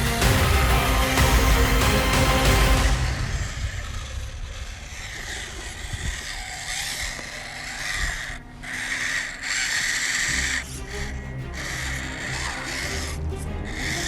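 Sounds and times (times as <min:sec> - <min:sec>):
loud background music: 0:00.0 - 0:04.2, 0:10.3 - 0:14.0
rc car electric motor whining: 0:03.0 - 0:14.0.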